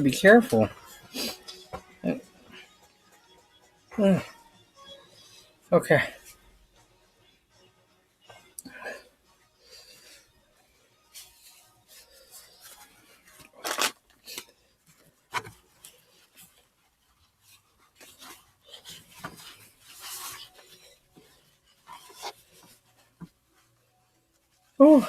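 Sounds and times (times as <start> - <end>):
rubbing and rustling: 9.8 - 25.0.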